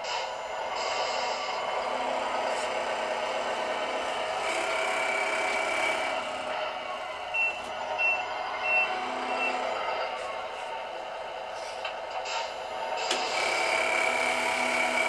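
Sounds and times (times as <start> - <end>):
truck engine running: 0.0 - 15.0
reversing beeps: 7.3 - 9.7.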